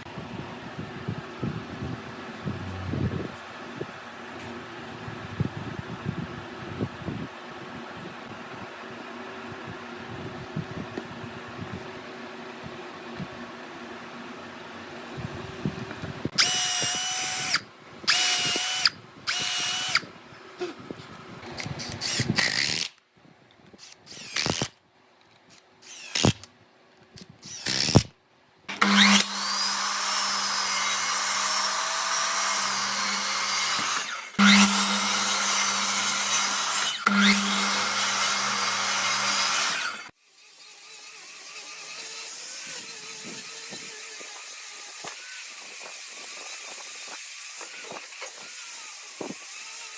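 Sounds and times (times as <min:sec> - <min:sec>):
power tool whining on wood: 0:16.3 - 0:20.1, 0:25.8 - 0:26.5, 0:28.7 - 0:49.9.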